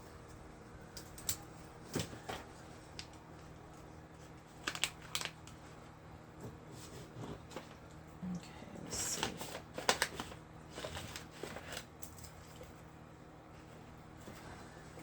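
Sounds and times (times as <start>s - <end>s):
faint steady hum: 0.0s - 15.0s
light taps and clicks of packaging: 4.6s - 5.6s.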